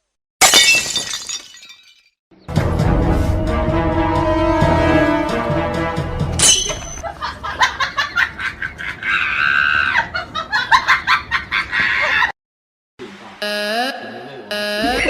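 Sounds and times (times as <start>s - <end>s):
music clip: 2.5s - 6.4s
person laughing hard: 7.0s - 12.3s, 14.8s - 15.0s.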